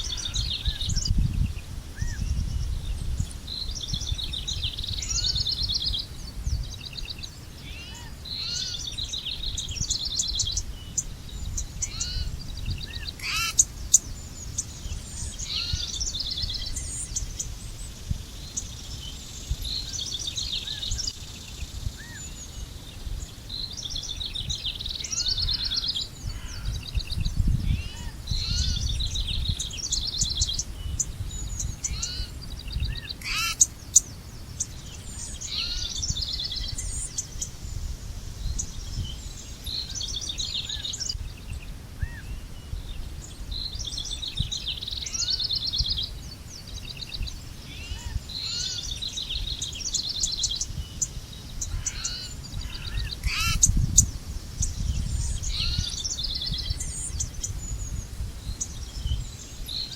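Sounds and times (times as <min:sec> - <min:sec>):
birds trilling: 0:00.0 - 0:01.1, 0:03.8 - 0:06.1, 0:07.0 - 0:17.5, 0:23.6 - 0:37.6, 0:43.6 - 0:59.9.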